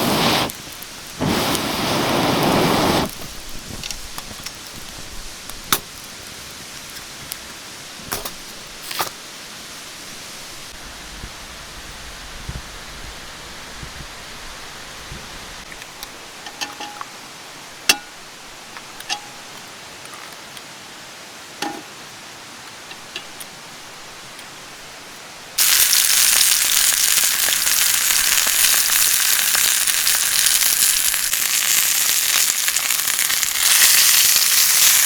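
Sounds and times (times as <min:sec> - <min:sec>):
loud noisy rustle: 0:00.0 - 0:03.5.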